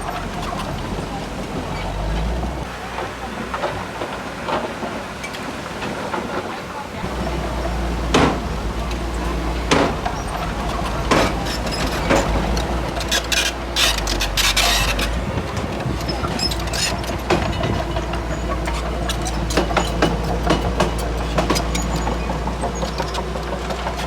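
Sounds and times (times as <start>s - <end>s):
diesel engine droning: 0.0s - 5.0s, 6.7s - 24.0s
metal clanks and rattles: 7.0s - 24.0s.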